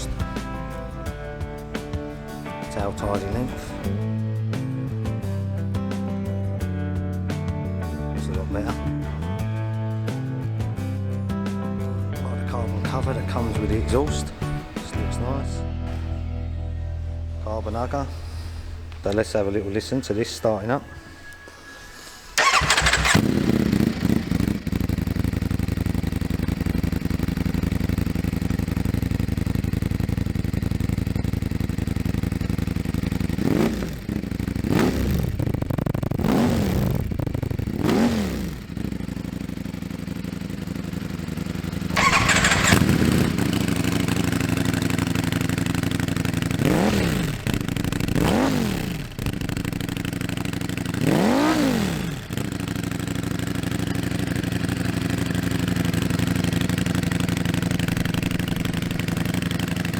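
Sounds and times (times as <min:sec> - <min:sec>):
motorcycle engine idling and revving: 0:00.0 - 0:59.9.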